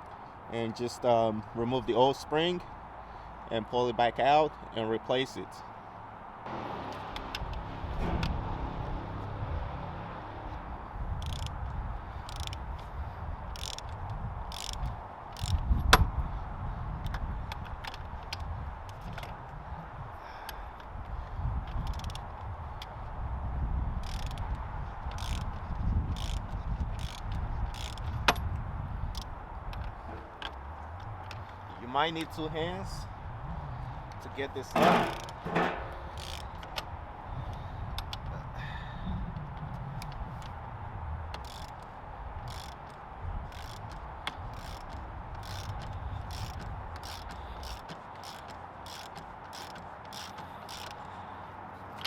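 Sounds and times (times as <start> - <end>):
ratchet wrench clicking: 11.2 - 11.6, 12.2 - 12.8, 13.5 - 16.1, 21.7 - 22.2, 24.0 - 24.5, 25.1 - 28.5, 34.7 - 36.8, 41.3 - 51.2.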